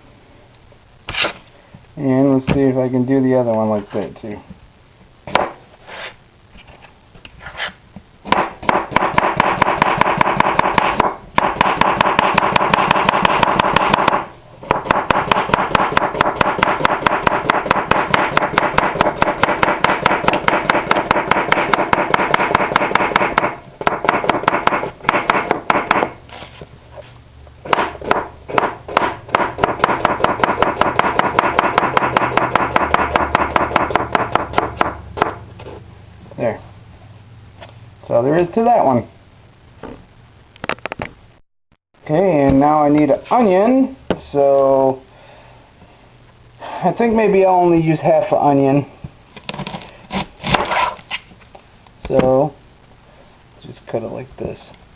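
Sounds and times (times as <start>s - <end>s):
knife chopping on cutting board: 8.3s - 26.2s, 27.7s - 35.4s.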